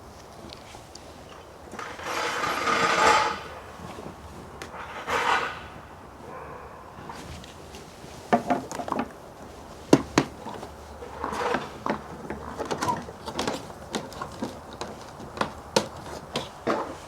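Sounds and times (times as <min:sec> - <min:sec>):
tools and parts clattering: 0:01.7 - 0:03.6, 0:09.9 - 0:17.0.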